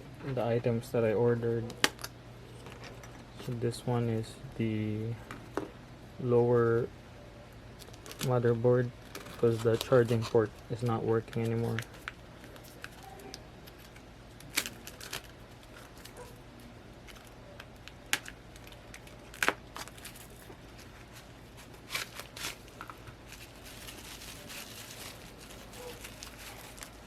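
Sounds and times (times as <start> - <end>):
plastic packaging crinkling: 7.8 - 8.4, 9.0 - 27.0.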